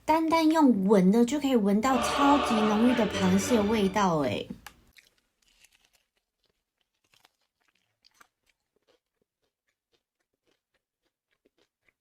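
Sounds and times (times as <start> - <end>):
faint crunching and chewing: 4.6 - 12.0.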